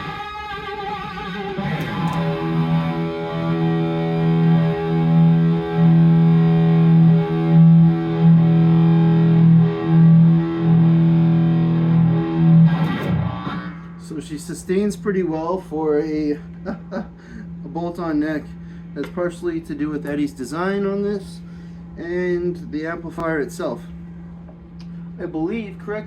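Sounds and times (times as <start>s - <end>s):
distorted electric guitar: 0.0s - 14.2s.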